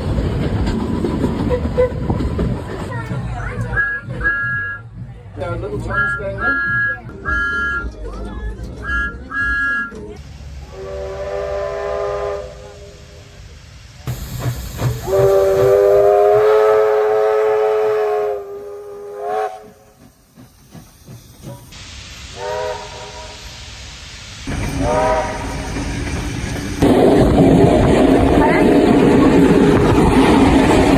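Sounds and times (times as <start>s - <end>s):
steam locomotive whistle blasts: 3.7s - 4.9s, 5.9s - 7.9s, 8.8s - 13.0s, 15.0s - 20.0s, 22.3s - 23.5s, 24.8s - 25.7s
steam hiss: 10.2s - 30.9s.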